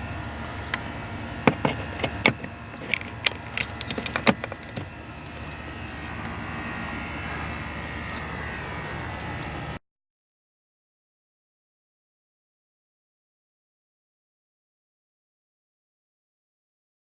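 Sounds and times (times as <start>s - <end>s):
mechanical hum: 0.0s - 9.8s
sharp clicks and knocks: 0.6s - 5.6s.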